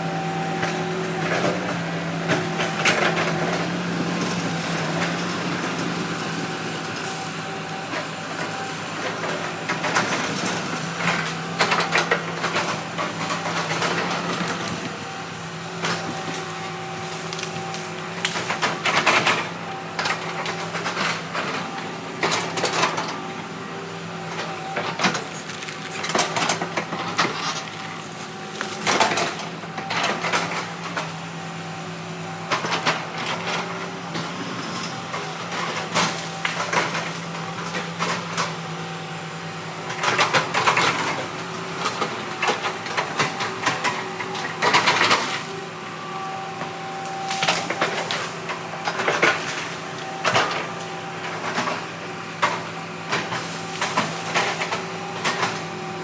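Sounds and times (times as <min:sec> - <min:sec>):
diesel machinery running: 0:00.0 - 0:56.0.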